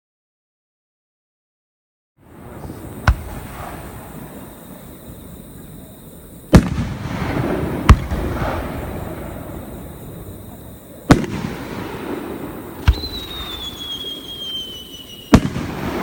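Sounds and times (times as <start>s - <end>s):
fireworks shells bursting: 11.1s - 16.0s.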